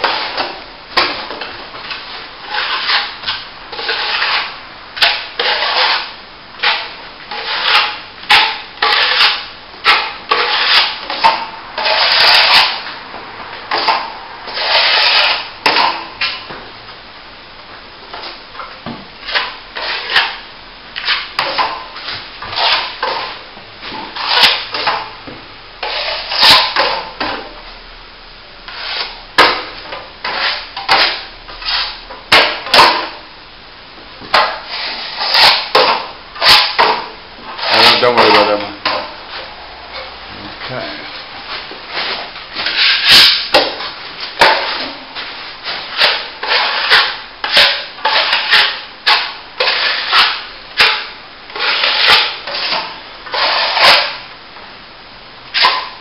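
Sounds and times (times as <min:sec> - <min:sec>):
trowel scraping wet plaster: 0:00.0 - 0:12.9, 0:13.7 - 0:16.0, 0:19.2 - 0:20.4, 0:21.0 - 0:25.1, 0:25.8 - 0:27.5, 0:28.7 - 0:29.6, 0:30.2 - 0:33.2, 0:34.3 - 0:39.2, 0:41.9 - 0:54.2, 0:55.6 - 0:56.0.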